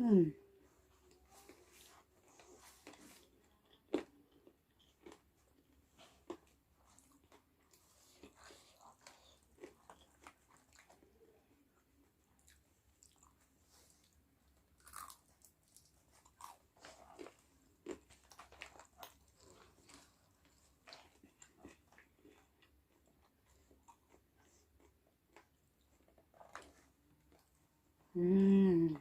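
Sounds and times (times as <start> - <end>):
person chewing crispy chicken: 1.1 - 27.6.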